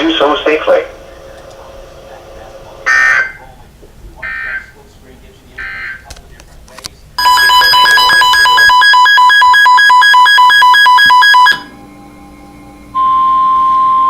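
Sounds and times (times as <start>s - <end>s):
two-tone electronic alert beeping: 7.2s - 12.2s, 12.9s - 14.0s.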